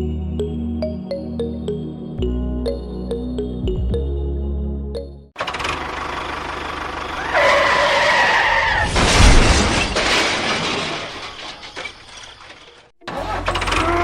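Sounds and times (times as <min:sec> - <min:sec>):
loud crash: 0:08.6 - 0:12.8.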